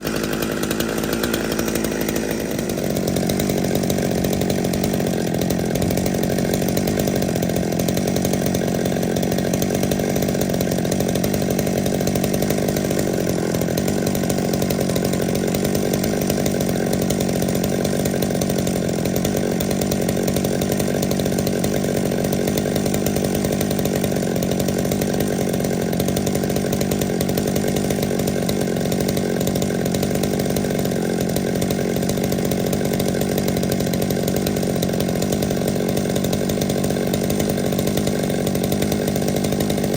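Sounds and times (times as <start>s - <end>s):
chainsaw running: 0.0s - 39.9s.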